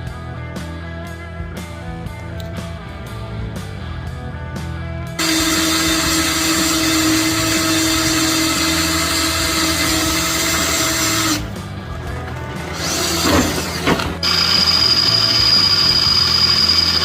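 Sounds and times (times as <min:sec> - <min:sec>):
power drill whirring: 0:05.2 - 0:17.0.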